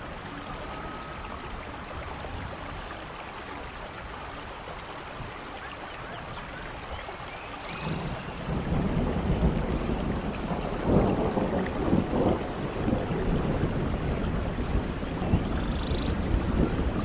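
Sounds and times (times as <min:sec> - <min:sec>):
steady rain falling: 0:00.0 - 0:17.0
low rumble of thunder: 0:07.6 - 0:17.0.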